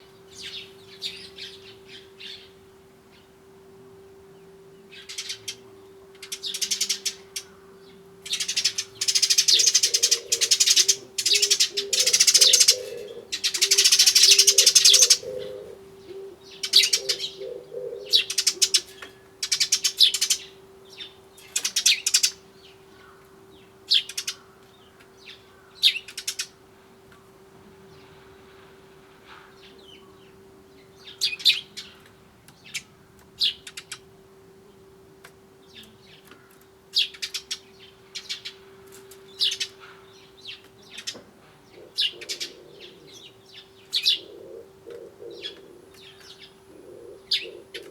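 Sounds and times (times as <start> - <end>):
sparrows chirping: 0.0 - 47.9
dove cooing: 5.0 - 20.8, 41.0 - 47.9.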